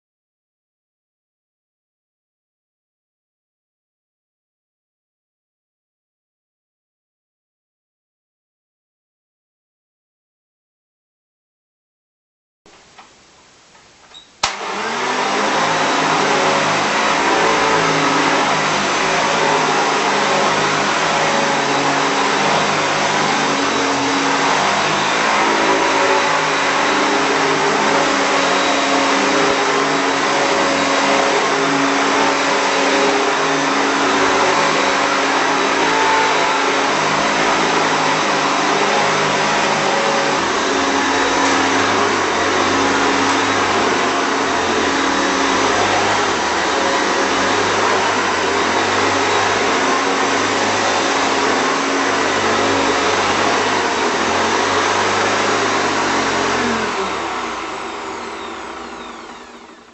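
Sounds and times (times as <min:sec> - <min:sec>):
upright vacuum cleaner whirring: 0:14.1 - 0:59.9.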